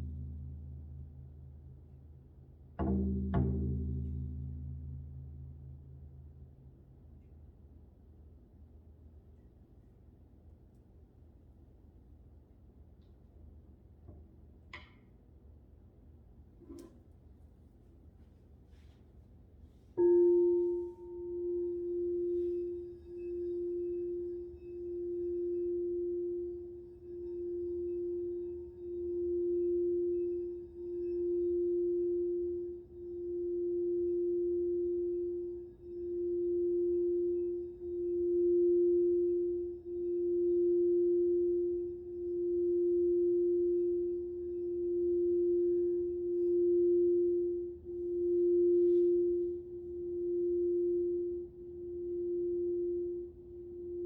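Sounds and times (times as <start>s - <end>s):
crystal singing bowl ringing: 0.0s - 2.2s, 20.0s - 54.0s.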